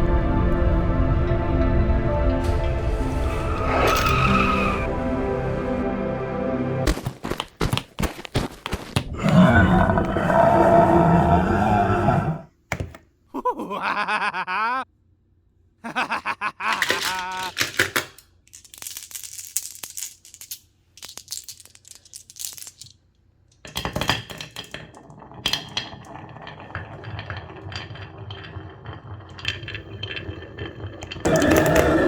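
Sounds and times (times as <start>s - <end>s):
marbles clacking on wooden run: 16.8s - 23.0s, 23.6s - 32.0s.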